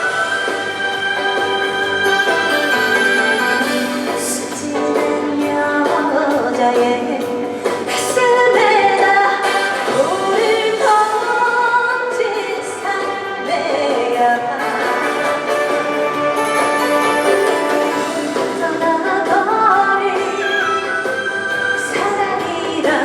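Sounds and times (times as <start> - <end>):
woman singing over backing track: 0.0 - 23.0.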